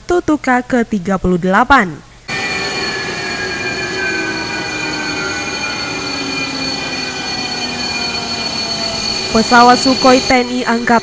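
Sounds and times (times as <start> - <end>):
jet engines whining: 2.3 - 11.0.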